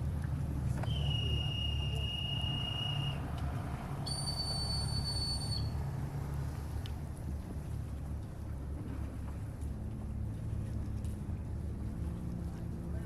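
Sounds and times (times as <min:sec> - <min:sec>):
whistle blown in long notes: 0:00.9 - 0:03.2, 0:04.0 - 0:05.7.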